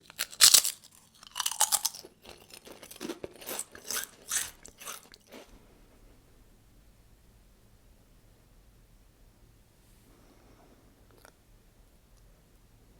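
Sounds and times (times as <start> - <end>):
crunchy bites: 0.0 - 5.5
chewing: 0.1 - 5.6.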